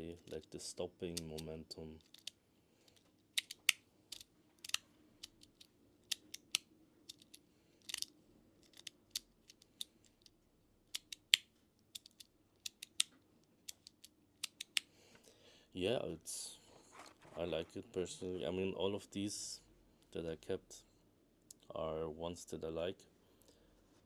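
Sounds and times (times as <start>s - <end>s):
magnetic fidget slider clicks: 3.4s - 9.8s.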